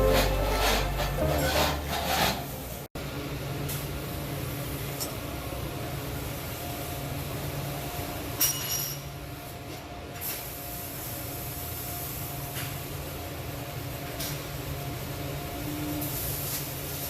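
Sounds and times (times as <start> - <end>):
machine hum: 0.0 - 2.1
ringing metal clink: 8.4 - 9.0.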